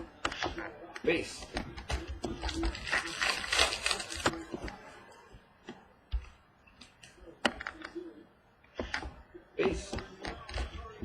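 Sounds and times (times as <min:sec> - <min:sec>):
cards rustling: 0:02.2 - 0:04.8.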